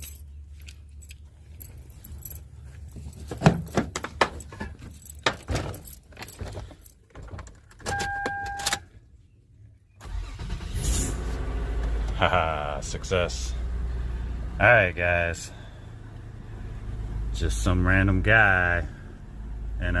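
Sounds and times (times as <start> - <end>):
keys jangling: 0.0 - 7.8
car engine starting: 10.0 - 20.0.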